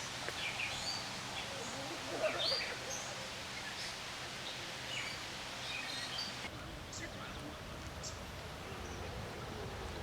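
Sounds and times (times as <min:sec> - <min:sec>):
outdoor background hiss: 0:00.0 - 0:10.0.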